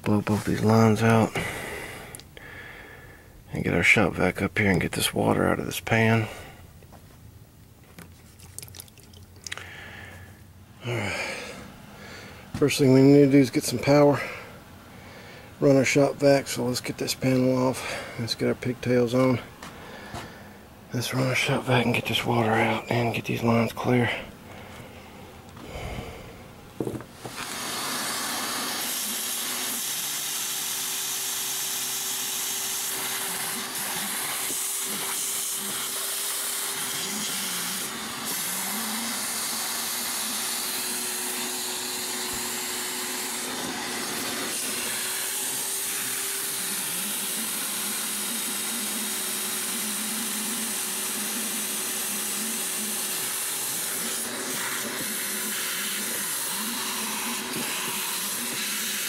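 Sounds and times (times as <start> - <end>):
shop vac sucking water: 8.2 - 10.0, 27.1 - 59.0.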